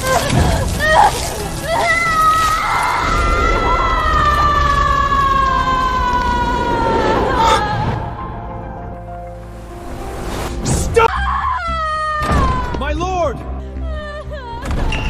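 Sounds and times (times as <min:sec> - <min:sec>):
person screaming: 0:00.0 - 0:07.8.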